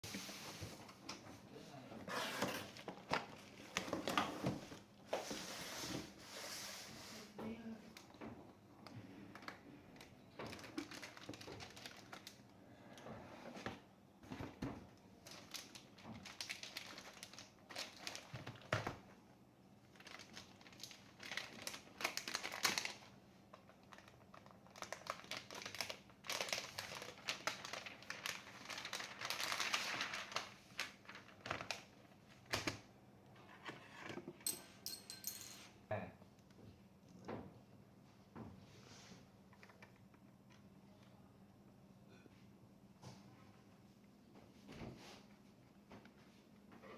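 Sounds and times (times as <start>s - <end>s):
packaging rustling and crinkling: 9.3s - 12.5s, 15.2s - 19.1s, 19.8s - 32.8s.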